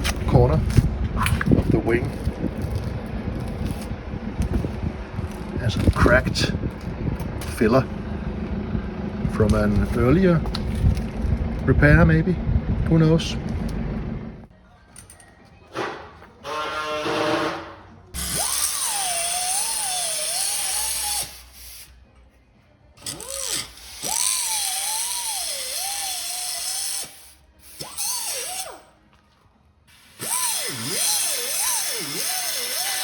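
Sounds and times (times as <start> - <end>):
handheld power tool whining: 15.8 - 21.9, 23.0 - 28.9, 29.9 - 33.0.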